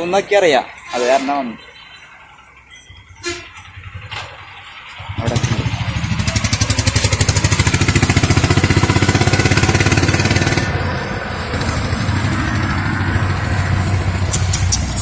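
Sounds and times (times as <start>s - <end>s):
vehicle engine running: 1.8s - 15.0s
sharp clicks: 14.3s - 15.0s.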